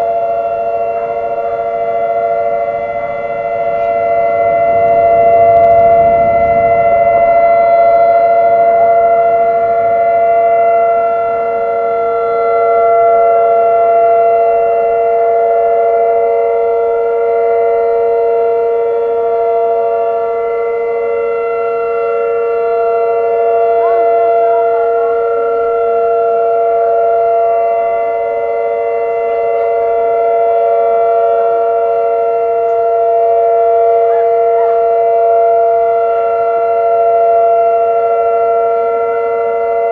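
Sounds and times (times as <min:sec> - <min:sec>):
outdoor warning sirens: 0:00.0 - 0:39.9.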